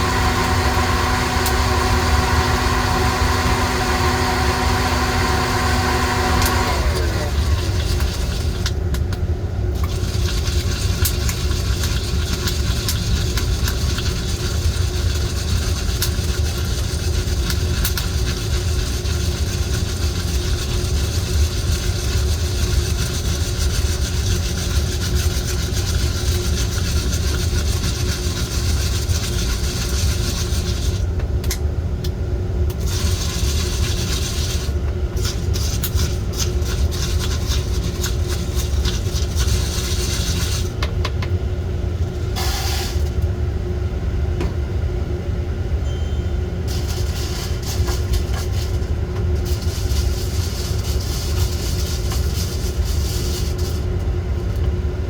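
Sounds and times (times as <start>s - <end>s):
coffee roaster drum rumbling: 0.0s - 31.3s, 45.8s - 55.0s
hiss: 42.4s - 43.1s, 46.7s - 48.8s, 49.4s - 53.9s.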